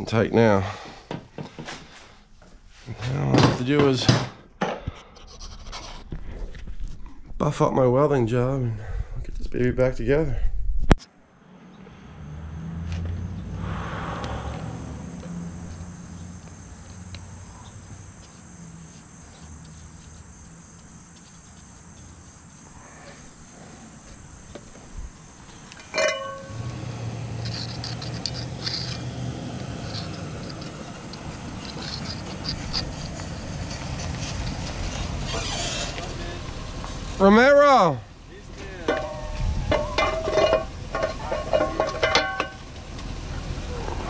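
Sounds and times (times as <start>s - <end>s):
low motor hum: 11.4s - 21.1s, 21.7s - 44.0s
sharp metal clang: 25.8s - 26.7s.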